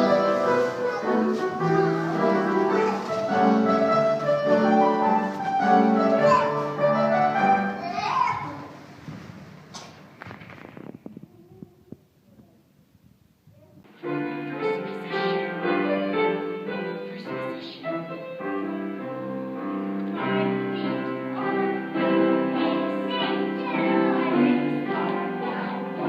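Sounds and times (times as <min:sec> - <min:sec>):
classical music with held notes: 0:00.0 - 0:08.2, 0:13.9 - 0:26.0.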